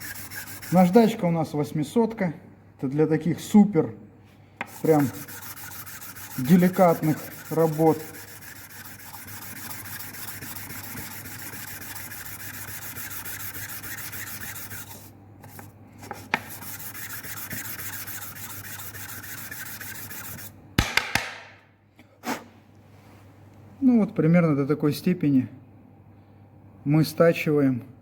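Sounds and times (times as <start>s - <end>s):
metal rubbing on sandpaper: 0.0s - 1.2s, 4.6s - 20.5s.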